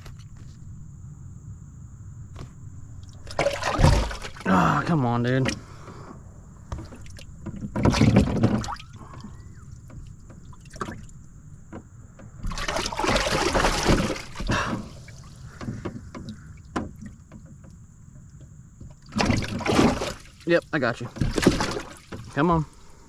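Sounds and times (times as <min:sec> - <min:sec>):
fish thrashing and splashing: 0:03.0 - 0:04.5, 0:06.7 - 0:11.2, 0:12.4 - 0:17.5, 0:19.0 - 0:20.5, 0:21.2 - 0:22.4
small knocks: 0:06.7 - 0:12.7, 0:13.7 - 0:20.2.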